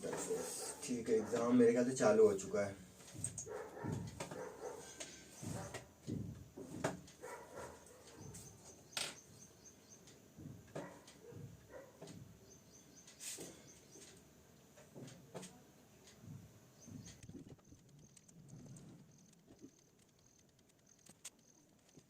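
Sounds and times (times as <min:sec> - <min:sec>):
faint clicks and soft knocks: 0:14.0 - 0:22.0
light chirping: 0:16.0 - 0:22.0.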